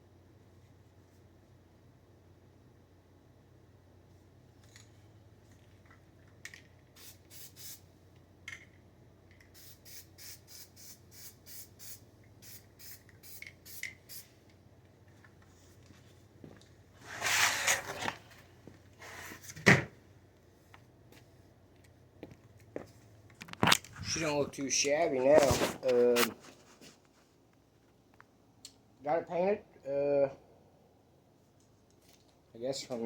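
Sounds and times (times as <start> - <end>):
spray paint can hissing: 6.9 - 7.8, 9.5 - 14.3.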